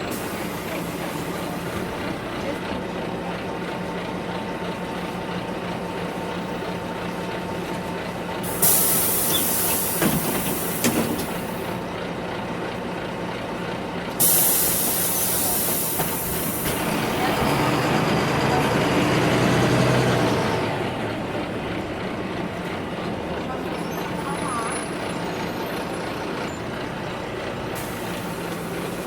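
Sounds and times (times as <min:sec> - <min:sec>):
bus engine droning: 0:00.0 - 0:29.0
compressed air hiss: 0:08.5 - 0:11.0, 0:14.2 - 0:16.7.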